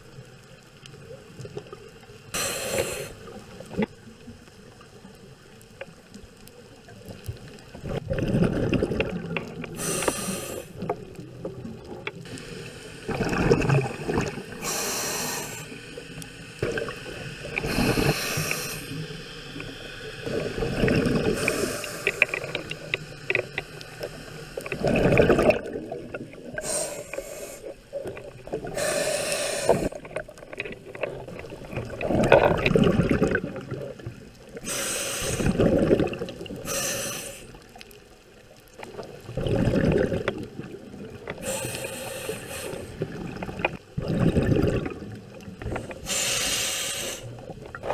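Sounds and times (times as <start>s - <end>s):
regulator inhale hiss: 2.3s - 3.5s, 9.7s - 10.9s, 12.2s - 13.2s, 14.4s - 24.8s, 26.4s - 30.2s, 34.5s - 35.7s, 36.5s - 37.8s, 41.4s - 43.1s, 45.7s - 47.5s
exhaled bubbles rumbling: 6.8s - 10.1s, 10.7s - 14.8s, 16.0s - 36.9s, 37.6s - 42.0s, 42.8s - 46.2s, 47.3s - 47.9s.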